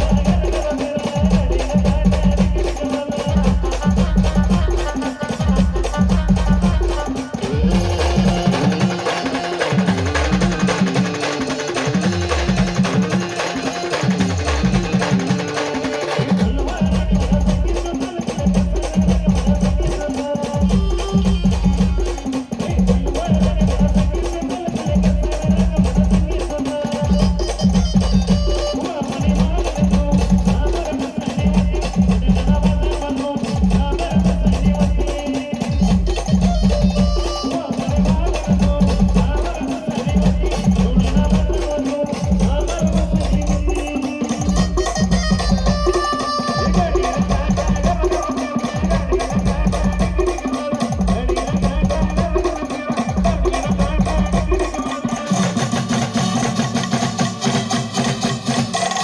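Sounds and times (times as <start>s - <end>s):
heavy bass drum beats: 0.0s - 59.0s
brass band playing: 3.5s - 17.6s, 20.6s - 23.3s, 27.0s - 30.4s, 35.7s - 59.0s.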